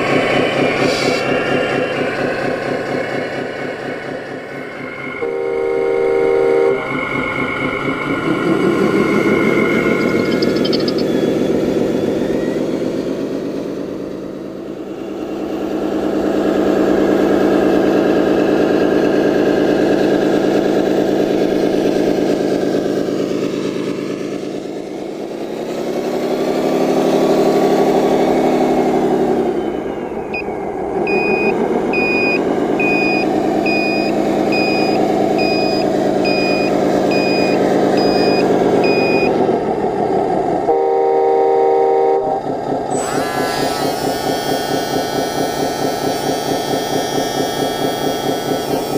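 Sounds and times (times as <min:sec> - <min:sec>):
simulated diesel engine revving: 0:00.0 - 0:48.9
reversing beeper: 0:04.9 - 0:13.1, 0:28.2 - 0:39.5.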